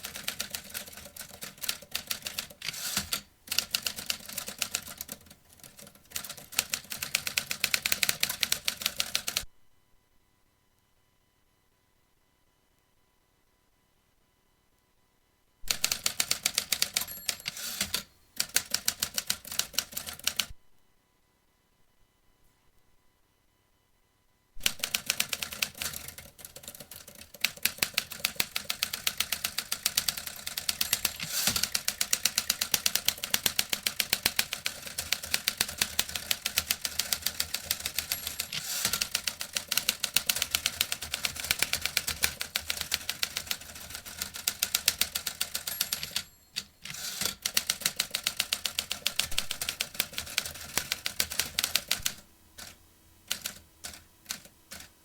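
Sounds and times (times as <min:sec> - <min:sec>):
typewriter keys clacking: 0:00.0 - 0:09.4, 0:15.7 - 0:20.5, 0:24.6 - 0:52.7, 0:53.3 - 0:54.9.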